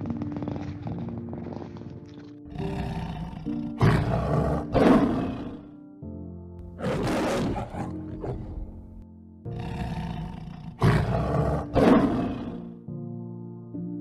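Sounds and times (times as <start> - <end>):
background music with held notes: 0.0 - 14.0
large animal calling: 6.8 - 12.7.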